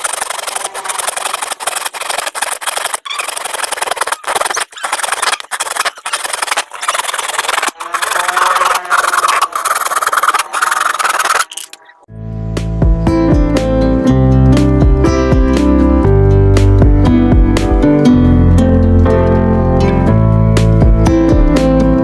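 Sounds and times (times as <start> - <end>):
hand tool scraping plastic pipe: 0.0 - 11.8.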